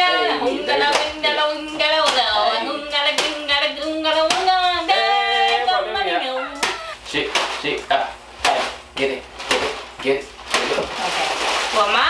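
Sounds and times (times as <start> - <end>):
sharp claps keeping time: 6.5 - 7.6.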